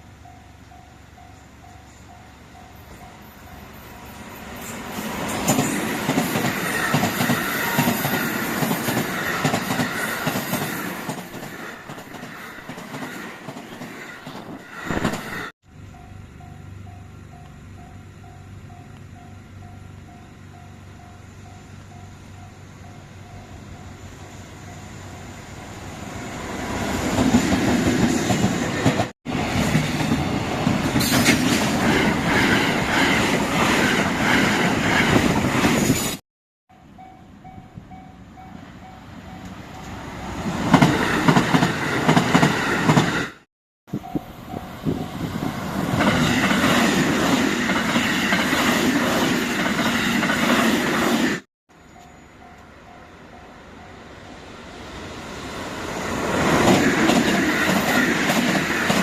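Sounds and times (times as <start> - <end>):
level-crossing warning bell: 0.0 - 4.3, 15.6 - 25.5, 36.7 - 40.0, 51.7 - 54.3
train wheels on rails: 0.0 - 36.2, 37.0 - 53.0, 53.8 - 59.0.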